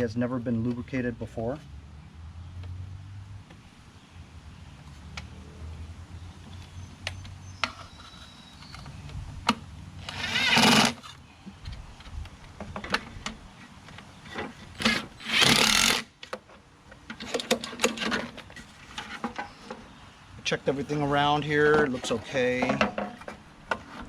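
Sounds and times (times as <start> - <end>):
cordless drill driving bolts: 10.0 - 11.1, 14.8 - 16.1
tools and parts clattering: 17.1 - 19.8, 21.7 - 24.0.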